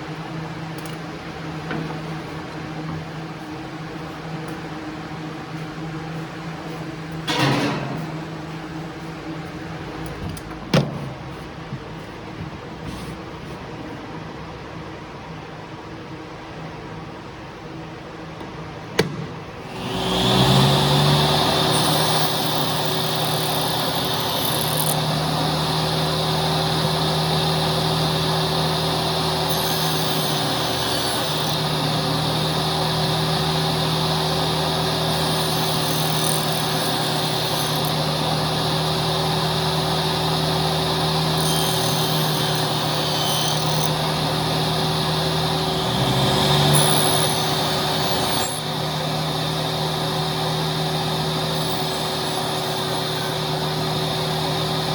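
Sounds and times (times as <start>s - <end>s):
power tool motor hum: 19.6s - 54.9s.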